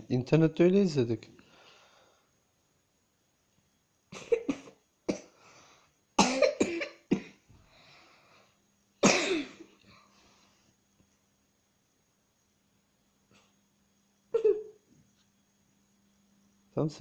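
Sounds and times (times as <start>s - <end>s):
child breathing: 1.4s - 2.4s, 5.4s - 6.0s, 7.6s - 8.6s
child coughing: 4.2s - 5.4s, 6.2s - 7.4s, 9.0s - 9.7s, 14.4s - 14.8s.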